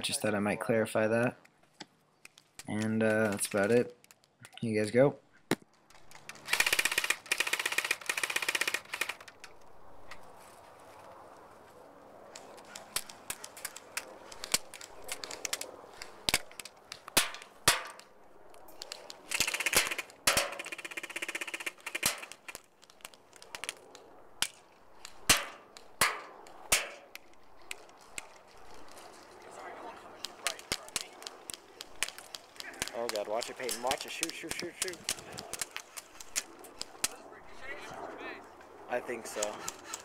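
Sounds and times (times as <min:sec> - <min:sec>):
airsoft gun full-auto bursts: 0:06.4 - 0:09.3, 0:19.3 - 0:22.6.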